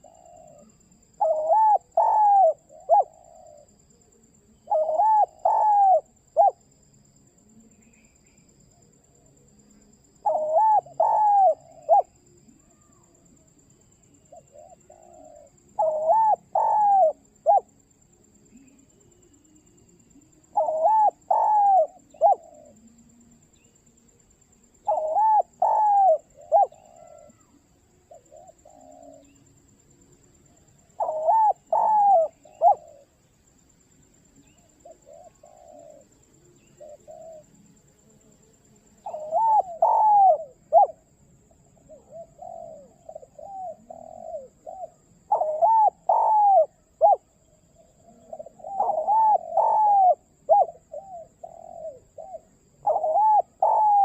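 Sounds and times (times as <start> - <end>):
dove cooing: 0.0 - 6.7, 10.2 - 13.5, 14.1 - 23.4, 24.7 - 29.4, 30.4 - 33.2, 34.4 - 37.7, 39.0 - 54.0.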